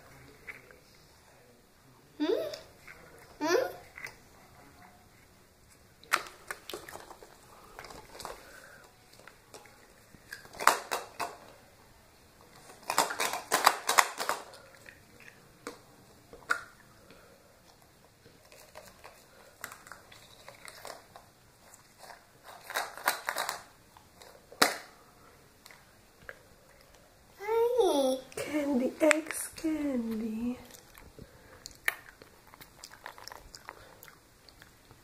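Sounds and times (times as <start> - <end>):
packaging crinkling and snapping: 12.6 - 14.9, 18.4 - 24.9.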